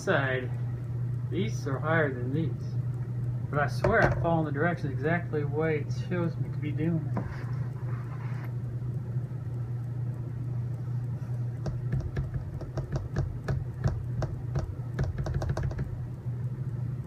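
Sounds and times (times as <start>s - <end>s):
steady low hum: 0.0s - 17.0s
plastic parts clicking and knocking: 11.6s - 15.9s.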